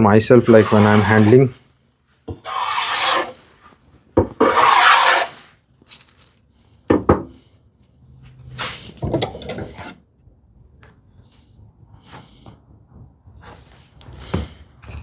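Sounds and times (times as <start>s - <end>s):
hand plane cutting wood: 0.4s - 1.5s, 2.4s - 3.5s, 4.4s - 5.5s.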